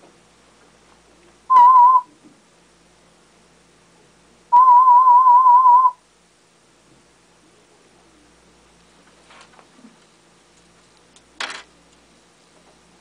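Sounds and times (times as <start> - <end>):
warble tone beeps: 1.5 - 2.1, 4.5 - 6.0.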